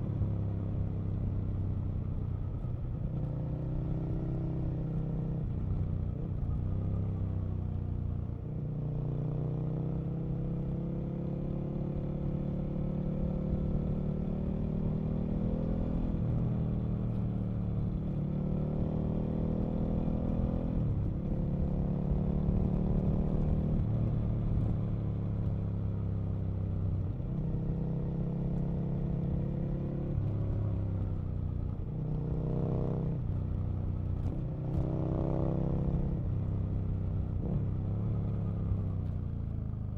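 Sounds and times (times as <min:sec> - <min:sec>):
motorcycle engine revving: 0:34.1 - 0:38.8.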